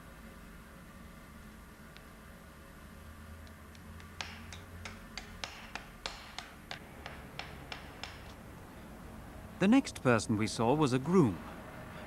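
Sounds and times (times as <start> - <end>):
hammer tapping nail into horseshoe: 4.0 - 8.4.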